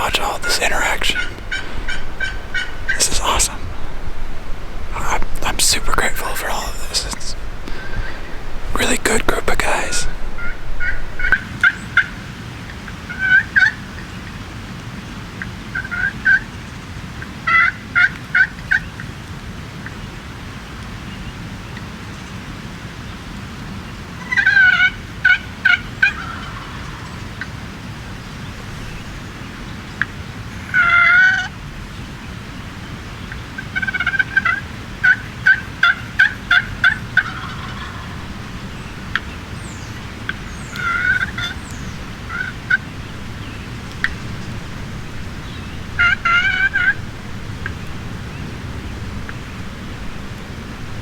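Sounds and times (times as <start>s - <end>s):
wild turkey calling: 0.0s - 11.8s, 24.4s - 27.2s, 30.7s - 31.5s, 33.3s - 48.5s.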